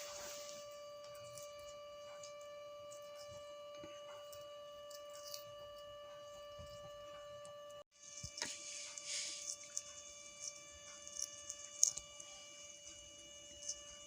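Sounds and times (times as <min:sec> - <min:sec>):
steady high-pitched whine: 0:00.0 - 0:14.0.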